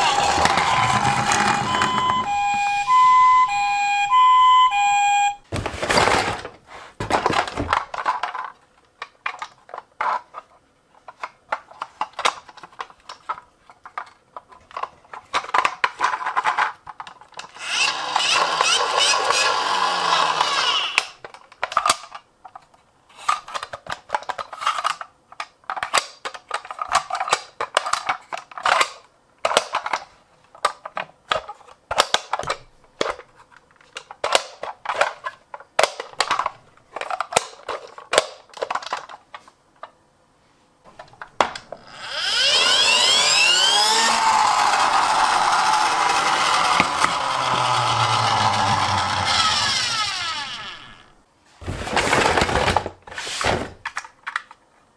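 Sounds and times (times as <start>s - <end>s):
plastic toy vehicles clicking: 0.0s - 2.9s, 7.2s - 40.0s, 41.0s - 51.1s
toy ambulance siren: 0.0s - 5.4s, 17.6s - 21.0s, 41.9s - 51.0s.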